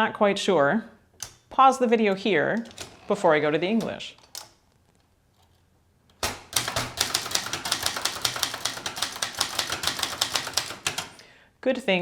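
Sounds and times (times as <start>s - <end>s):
typewriter keys clacking: 2.1s - 4.6s, 6.2s - 11.2s.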